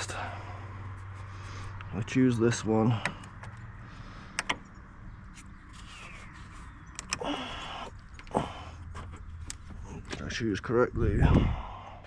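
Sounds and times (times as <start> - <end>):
hose scraping squeak: 5.4 - 7.8.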